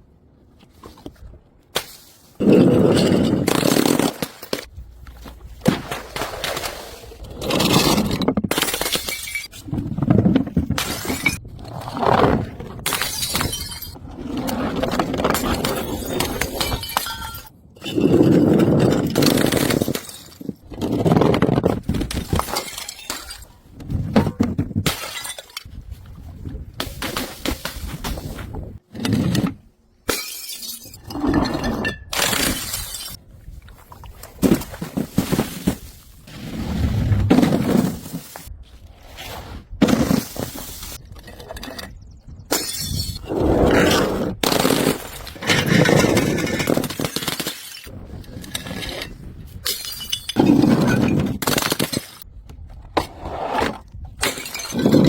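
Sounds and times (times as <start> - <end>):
glass bottles shattering: 8.5 - 9.5, 12.9 - 14.0, 15.5 - 18.1, 22.2 - 23.5, 30.1 - 33.2, 42.5 - 43.2, 49.6 - 52.2, 54.2 - 55.0.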